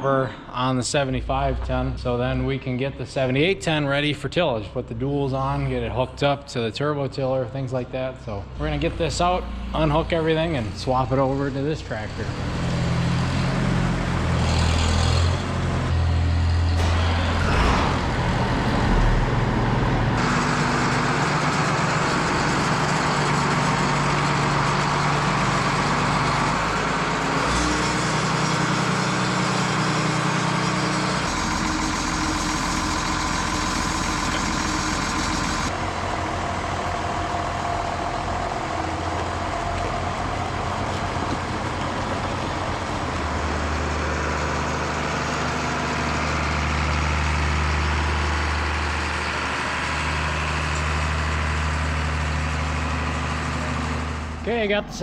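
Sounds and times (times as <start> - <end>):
tractor diesel engine running: 0.1 - 55.0.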